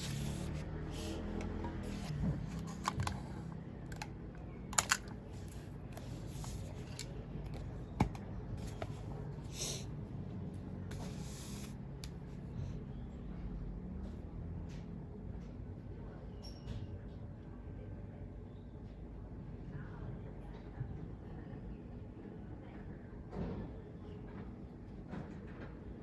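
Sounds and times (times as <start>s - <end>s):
desk handling clicks: 1.0s - 8.2s.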